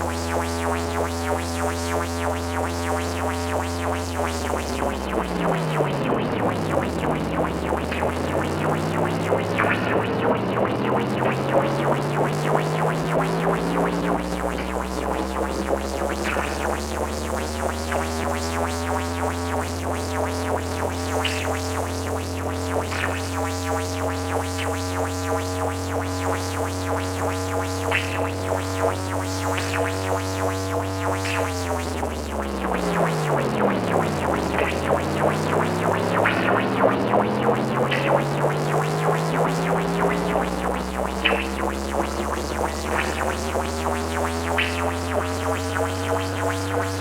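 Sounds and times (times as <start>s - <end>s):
fast pulsing beat: 0.0s - 47.0s
low droning alarm chord: 0.0s - 47.0s.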